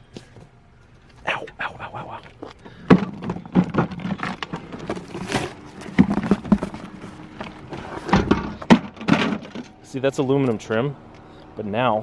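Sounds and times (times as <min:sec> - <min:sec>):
thin metal knocks and rattles: 0:02.9 - 0:09.8.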